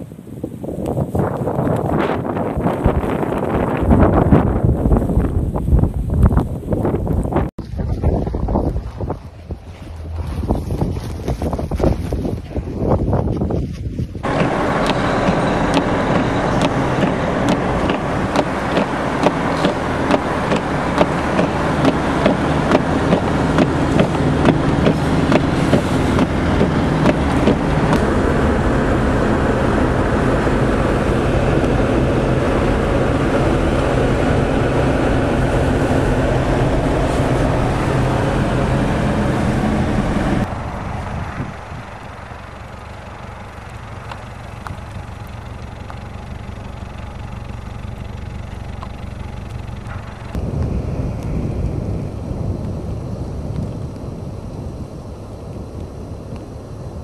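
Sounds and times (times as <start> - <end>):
vehicle engine running: 1.1 - 57.0
sharp regular clicks: 14.3 - 28.0.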